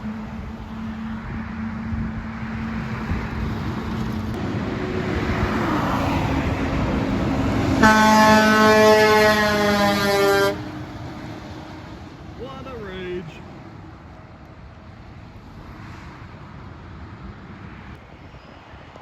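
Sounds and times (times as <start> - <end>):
truck engine and road noise: 0.0 - 19.0
truck air horn blast: 7.8 - 10.8.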